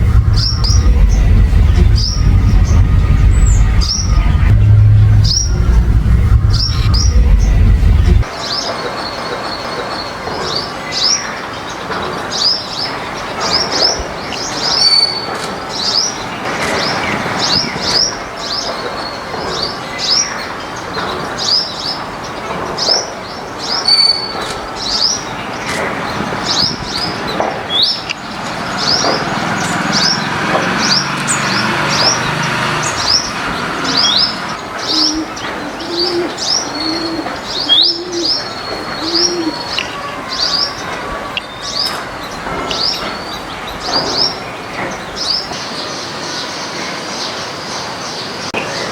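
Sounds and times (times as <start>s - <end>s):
dove cooing: 39.0s - 39.6s.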